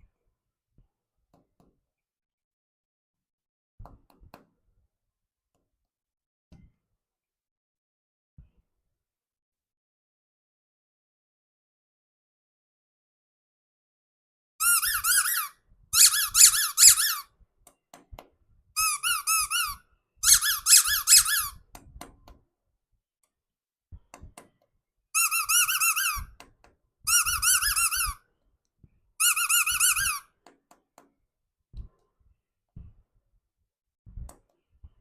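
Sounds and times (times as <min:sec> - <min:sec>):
squeaky toy squeaking: 0:14.6 - 0:17.3, 0:18.8 - 0:21.6, 0:25.2 - 0:26.4, 0:27.1 - 0:28.2, 0:29.2 - 0:30.4.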